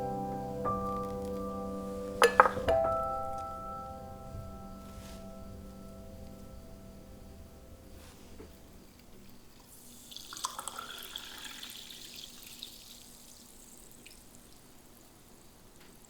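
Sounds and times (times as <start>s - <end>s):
liquid pouring: 9.7s - 15.6s.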